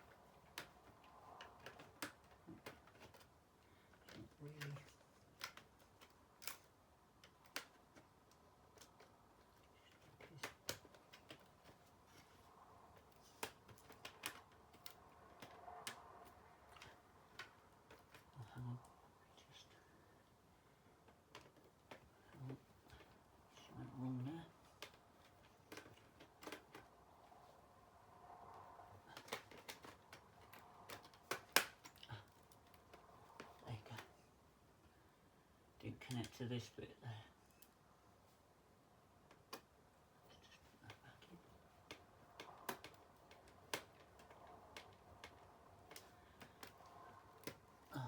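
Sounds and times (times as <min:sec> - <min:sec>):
laptop parts clicking and tapping: 0:00.0 - 0:18.3, 0:24.6 - 0:33.6, 0:41.4 - 0:47.7.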